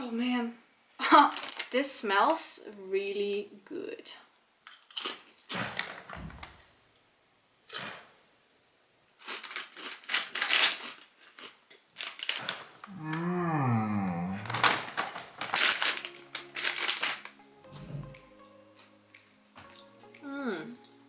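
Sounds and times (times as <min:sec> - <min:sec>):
person chewing crunchy chips: 0:09.2 - 0:12.7, 0:14.4 - 0:18.0
person humming mmm: 0:12.9 - 0:14.5, 0:17.6 - 0:18.4, 0:19.8 - 0:21.0
background music: 0:15.6 - 0:21.0.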